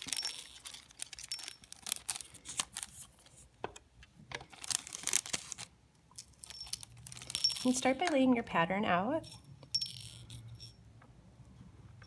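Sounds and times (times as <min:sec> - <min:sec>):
beads clicking and rattling: 0:00.0 - 0:03.0, 0:04.5 - 0:08.2.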